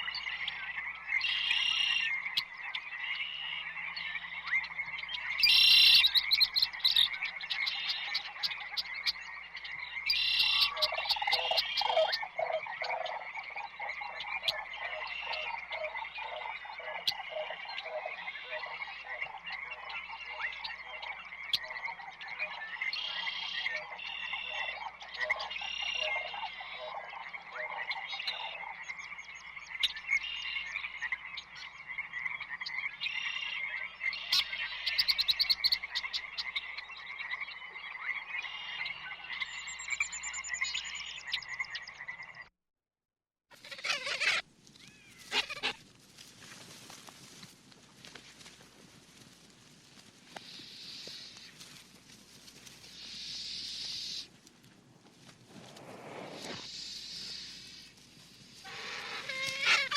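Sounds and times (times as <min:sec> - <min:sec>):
rapidly pulsed animal calls: 0:00.0 - 0:42.0, 0:48.0 - 0:54.4, 0:55.5 - 0:59.9.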